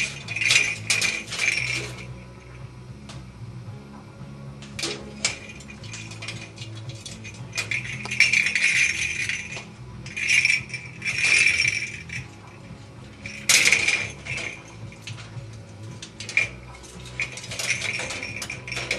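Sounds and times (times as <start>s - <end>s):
parrot toy rattling and clattering: 0.0s - 2.6s, 4.7s - 18.9s.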